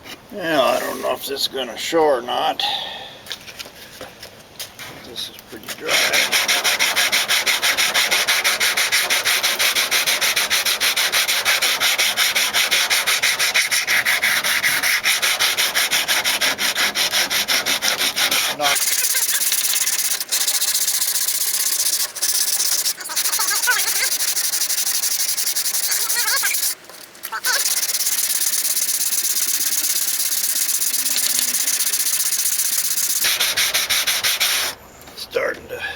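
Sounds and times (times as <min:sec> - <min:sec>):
thin scraping hiss: 0:00.0 - 0:01.4, 0:18.6 - 0:34.8
sandpaper sanding by hand: 0:05.8 - 0:34.8.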